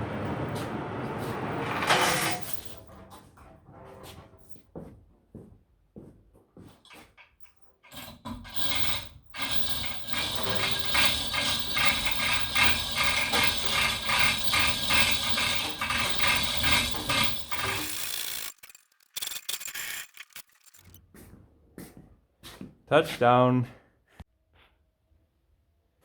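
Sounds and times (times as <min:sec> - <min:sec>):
ratchet clicking rapidly: 0:08.5 - 0:21.0.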